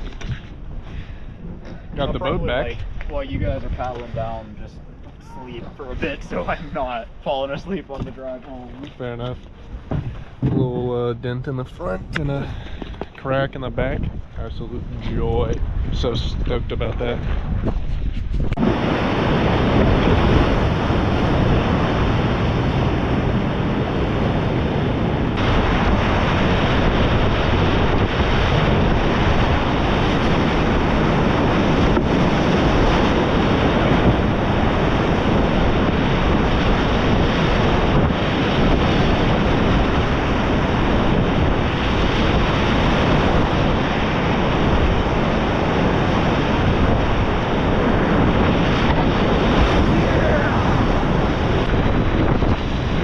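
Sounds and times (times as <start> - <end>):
wind buffeting microphone: 0.0 - 53.0
whitewater rapids rushing: 45.5 - 51.7.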